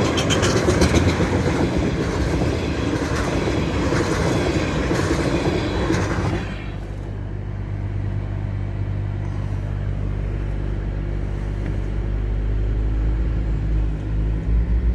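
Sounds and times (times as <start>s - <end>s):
freight train cars rolling past: 0.0s - 7.9s
idling vehicle engine hum: 6.3s - 14.9s.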